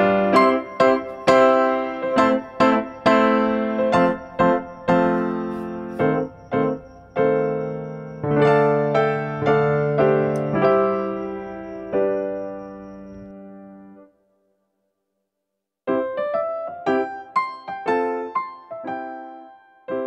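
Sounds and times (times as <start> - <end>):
electric piano melody: 0.0 - 14.1, 15.9 - 20.0.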